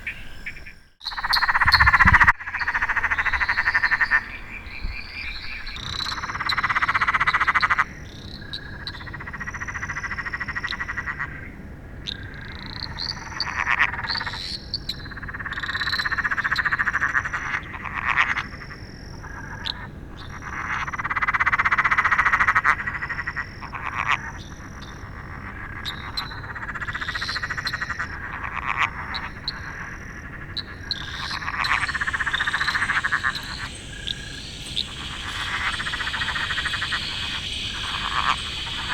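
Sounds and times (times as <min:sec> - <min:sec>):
frogs trilling: 0:00.0 - 0:38.9
short high frog notes: 0:31.1 - 0:38.9.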